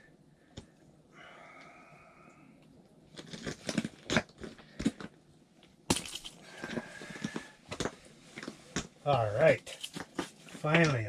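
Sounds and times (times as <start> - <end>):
crackling crumpling handling noises: 2.7 - 11.0.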